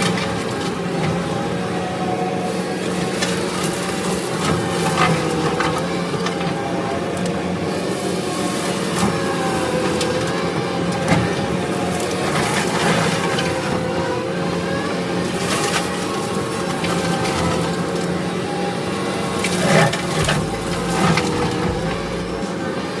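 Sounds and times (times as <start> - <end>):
track loader running: 0.1 - 23.0
wood cracking: 19.6 - 22.7.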